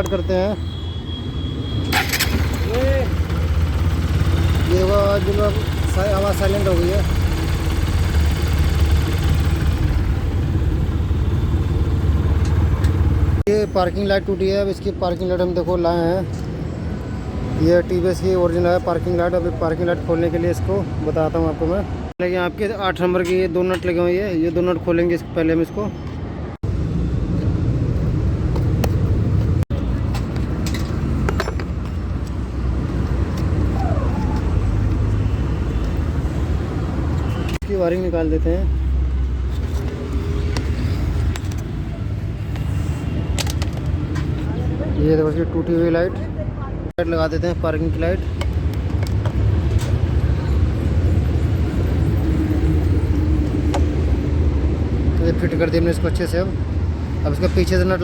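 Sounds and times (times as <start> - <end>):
motor vehicle rumble: 1.8 - 13.6, 26.0 - 45.0
motorcycle engine idling: 2.0 - 11.0.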